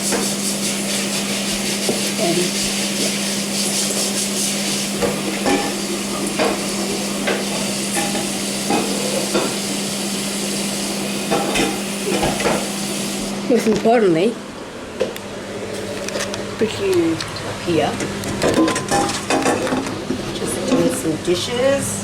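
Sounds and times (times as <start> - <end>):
utensil stirring food in pan: 0.0 - 12.6
food sizzling: 0.0 - 13.4.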